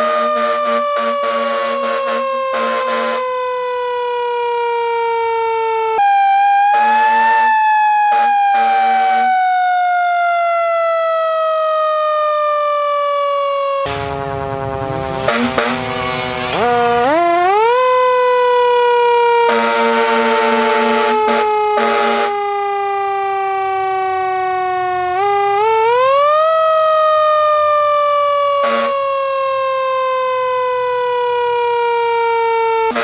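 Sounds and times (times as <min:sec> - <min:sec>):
air horn blasts: 0:00.0 - 0:03.4, 0:06.6 - 0:09.4, 0:13.8 - 0:17.3, 0:19.4 - 0:22.5, 0:28.6 - 0:29.1
siren wailing: 0:00.0 - 0:33.0
noisy rush: 0:13.8 - 0:17.5.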